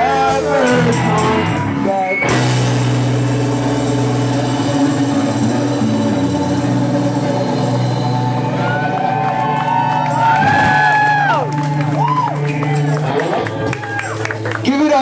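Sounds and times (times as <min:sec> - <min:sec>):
live rock band sustained chords: 0:00.0 - 0:14.6
crowd whooping: 0:05.4 - 0:14.6.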